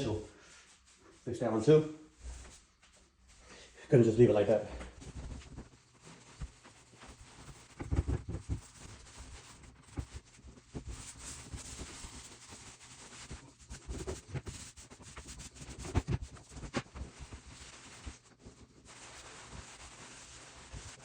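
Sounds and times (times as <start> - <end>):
scratchy scrubbing on wood floor: 5.9 - 21.0.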